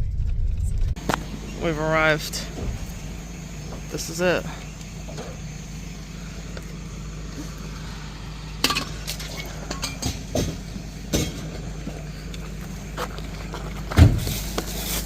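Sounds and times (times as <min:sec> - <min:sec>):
vehicle engine idling: 0:00.0 - 0:15.0
sharp clunks and knocks: 0:02.4 - 0:03.9, 0:08.6 - 0:12.1, 0:13.8 - 0:14.3.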